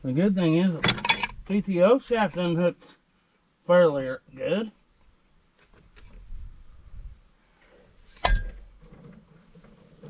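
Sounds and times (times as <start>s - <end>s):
crickets chirring: 0.0s - 10.0s
knocking and shuffling of parts: 0.8s - 1.5s.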